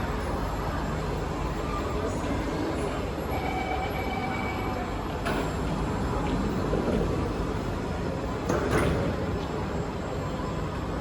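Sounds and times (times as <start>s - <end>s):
thin steady whine: 0.0s - 6.6s
train wheels rumbling on rail: 0.0s - 11.0s.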